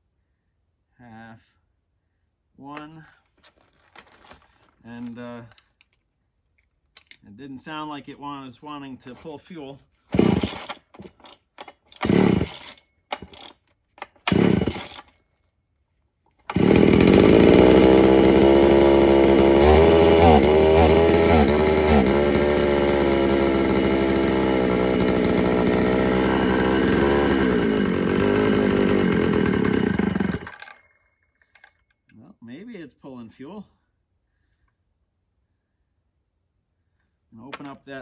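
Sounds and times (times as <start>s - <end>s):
chainsaw starter pulls: 3.5s - 6.0s, 10.1s - 15.3s, 16.4s - 32.0s
chainsaw engine running: 10.1s - 11.4s, 12.0s - 13.5s, 14.2s - 15.1s, 16.5s - 30.8s.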